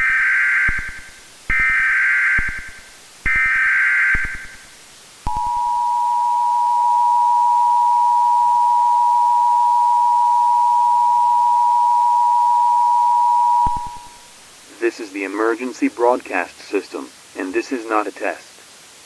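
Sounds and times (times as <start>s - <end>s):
buzzy digital header burst: 0.0s - 5.6s, 13.5s - 14.4s
two-tone alert beep: 5.3s - 14.2s.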